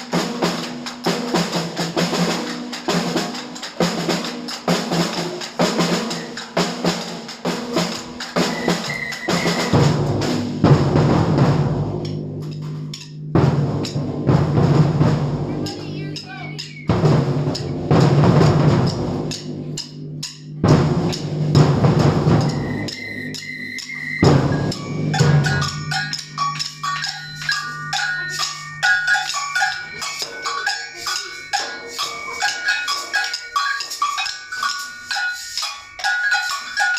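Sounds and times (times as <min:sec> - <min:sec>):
bells playing pattern: 0:00.0 - 0:36.9
samba percussion band: 0:00.0 - 0:36.9
deep bass drums: 0:09.8 - 0:12.4.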